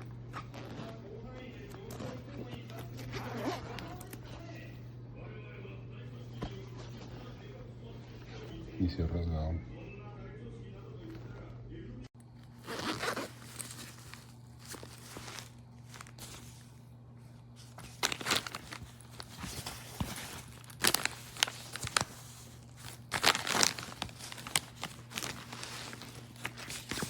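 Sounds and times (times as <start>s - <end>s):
faint steady low hum: 0.0s - 27.0s
fabric bag rustling and crinkling: 12.2s - 27.0s
handling scrapes: 12.4s - 27.0s.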